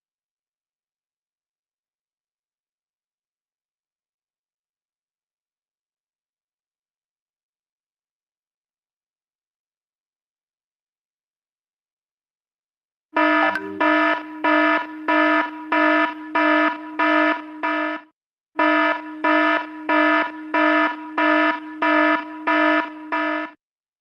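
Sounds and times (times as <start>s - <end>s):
alarm clock buzzer beeping: 13.2s - 23.6s.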